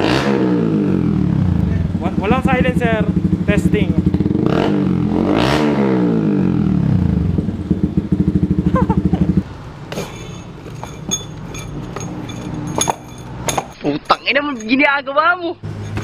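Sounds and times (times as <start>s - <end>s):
motorcycle engine revving and idling: 0.0s - 14.2s
light clinks and clicks: 9.9s - 14.8s, 15.7s - 16.0s.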